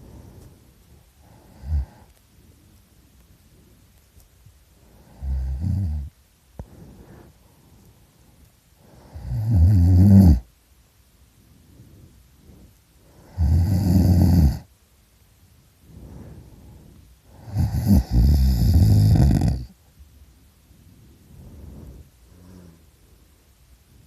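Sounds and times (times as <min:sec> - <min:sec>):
faint breathing: 0:00.0 - 0:09.4, 0:11.2 - 0:13.4, 0:15.7 - 0:20.0, 0:20.6 - 0:24.0
man snoring loudly: 0:05.2 - 0:06.1, 0:09.1 - 0:10.4, 0:13.3 - 0:14.7, 0:17.4 - 0:19.7.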